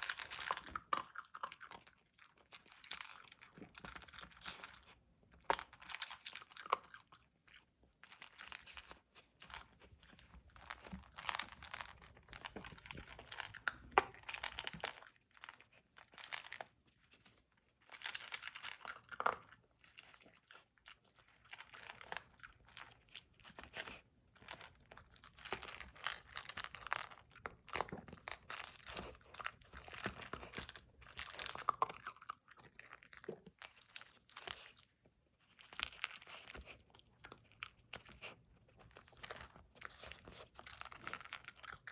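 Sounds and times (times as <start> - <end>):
dog crunching dry kibble: 0.0 - 41.9.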